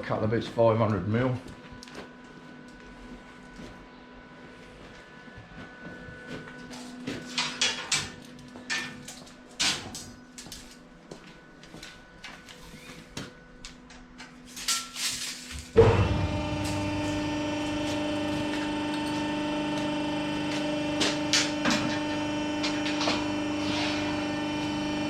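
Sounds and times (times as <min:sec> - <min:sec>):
electric cutting tool motor hum: 0:15.8 - 0:25.0.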